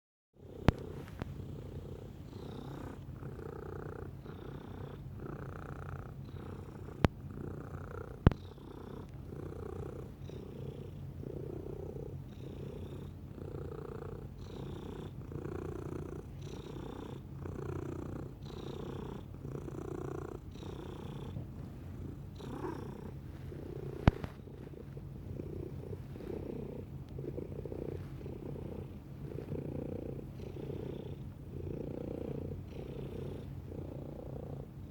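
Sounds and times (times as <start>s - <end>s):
cat purring: 0.4s - 34.9s.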